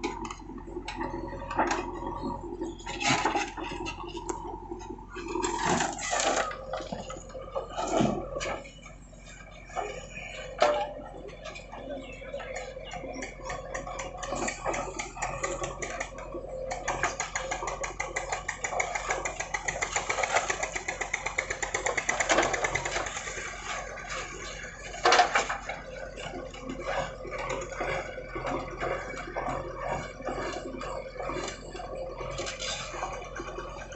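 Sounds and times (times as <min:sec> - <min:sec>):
machine engine clattering: 0:00.0 - 0:33.9.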